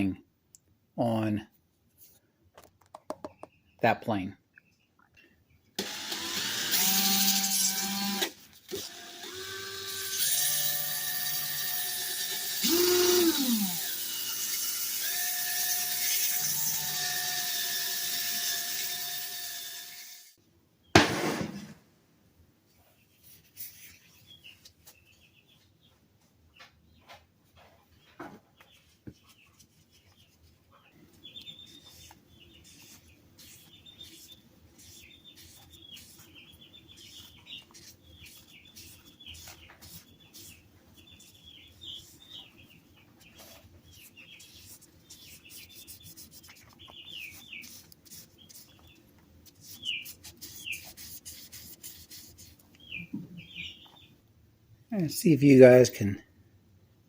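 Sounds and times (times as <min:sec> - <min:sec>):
hand rubbing wooden knob: 0:49.5 - 0:52.7.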